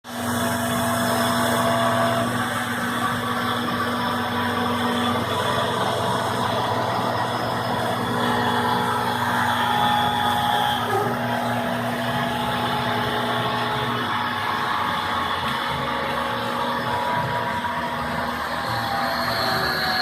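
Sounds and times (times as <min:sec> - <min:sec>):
low hum: 0:00.1 - 0:20.0
router cutting wood: 0:00.1 - 0:20.0
whining motor tones: 0:00.1 - 0:20.0.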